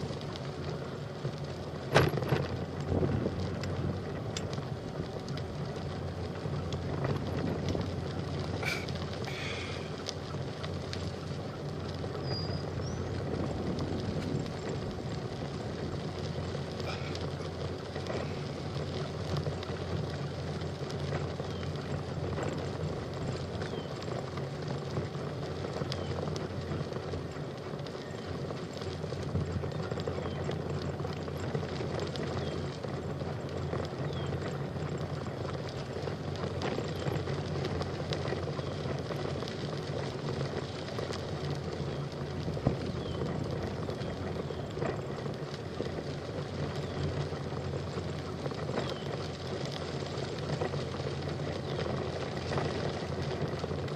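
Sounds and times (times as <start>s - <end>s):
bicycle rolling along a trail: 0.0s - 53.9s
faint bird chirps: 12.2s - 13.1s.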